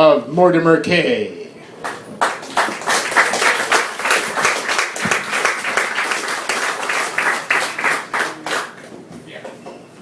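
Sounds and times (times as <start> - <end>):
audience applauding: 1.8 - 8.9.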